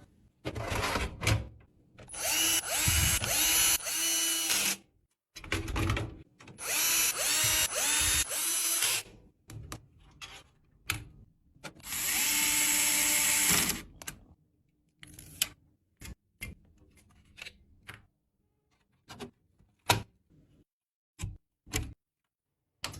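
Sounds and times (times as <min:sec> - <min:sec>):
power screwdriver whirring: 0:02.1 - 0:04.8, 0:06.6 - 0:09.0, 0:11.9 - 0:13.7.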